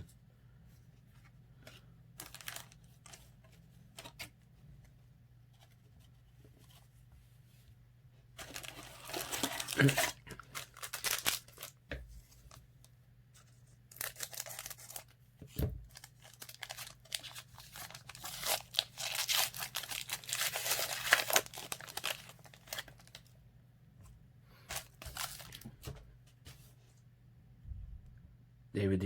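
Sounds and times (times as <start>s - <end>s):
wrapper tearing and crinkling: 2.2s - 2.8s, 8.4s - 11.8s, 13.9s - 15.2s, 15.9s - 23.3s, 24.7s - 25.6s.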